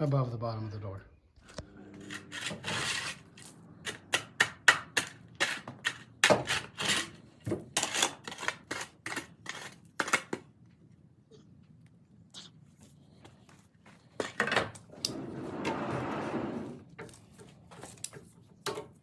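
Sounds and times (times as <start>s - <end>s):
digging in packed dirt: 2.0s - 10.4s.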